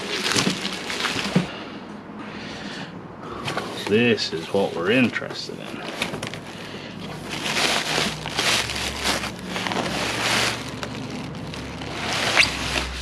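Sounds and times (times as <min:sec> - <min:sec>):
packaging rustling and crinkling: 0:00.0 - 0:01.5, 0:03.4 - 0:13.0.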